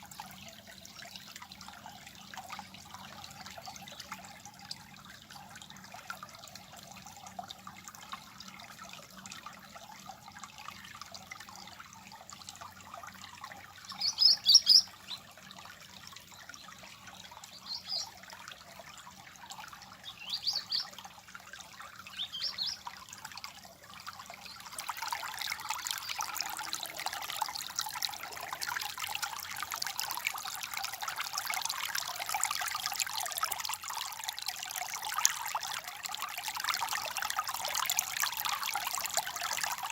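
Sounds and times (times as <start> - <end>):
water trickling and babbling: 0.0 - 39.9
high bird chirps: 13.9 - 14.9.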